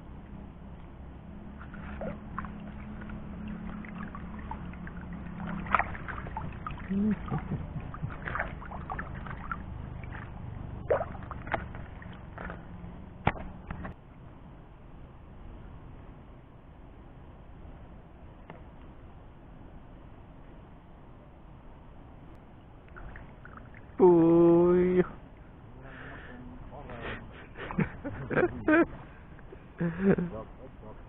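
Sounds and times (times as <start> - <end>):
faint low hum: 0.0 - 31.0
water sloshing: 1.4 - 14.0, 22.9 - 24.0
small splashes and drips: 1.6 - 13.9, 22.9 - 24.0.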